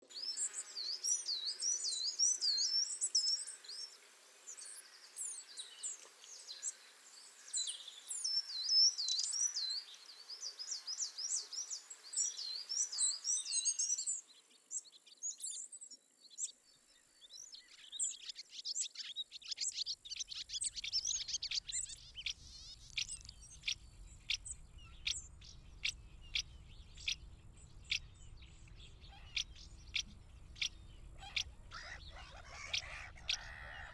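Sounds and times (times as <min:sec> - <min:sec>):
small birds twittering: 0:00.0 - 0:33.9
sharp high bird calls: 0:20.1 - 0:33.9.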